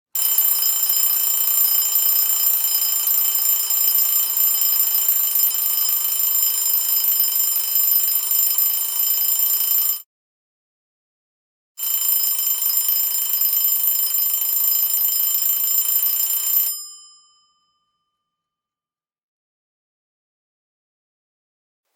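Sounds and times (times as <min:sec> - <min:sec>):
alarm clock bell ringing: 0:00.2 - 0:10.0, 0:11.8 - 0:17.8.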